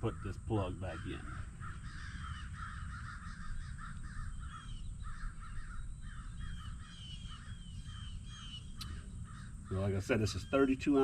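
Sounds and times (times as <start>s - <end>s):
birds making harsh calls: 0.0s - 11.0s
high bird chirps: 4.2s - 11.0s.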